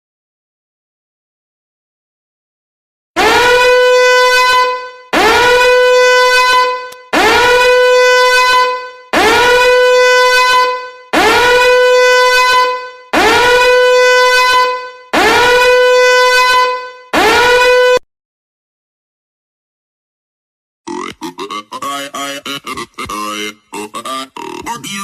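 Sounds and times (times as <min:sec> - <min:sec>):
buzzy horn blasts: 0:03.2 - 0:18.0.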